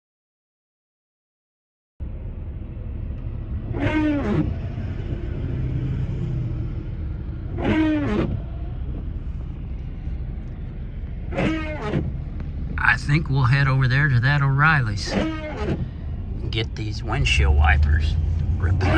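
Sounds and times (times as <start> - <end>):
van driving rumble: 2.0 - 18.9.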